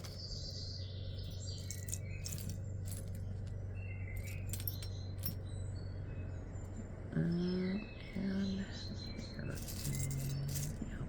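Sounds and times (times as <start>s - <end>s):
steady low hum: 0.0s - 11.0s
metal jewelry clinking: 1.1s - 5.5s, 9.2s - 11.0s.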